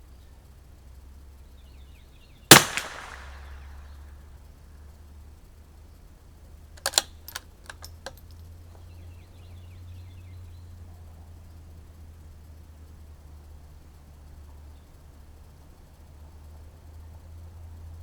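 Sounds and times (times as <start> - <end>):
rifle bolt metallic clicks: 2.5 - 3.4, 6.8 - 8.4.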